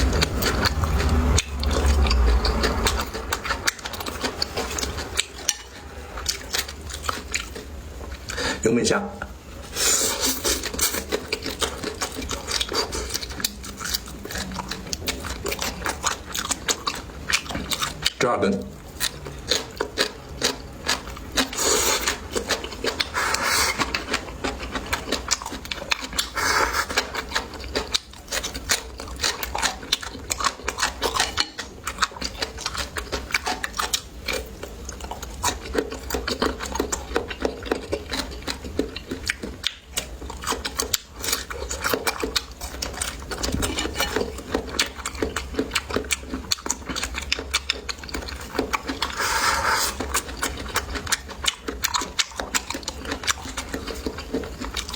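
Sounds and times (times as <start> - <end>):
wet mouth clicks: 0.0 - 7.6, 24.8 - 54.9
chewing: 0.0 - 8.6, 9.2 - 54.9.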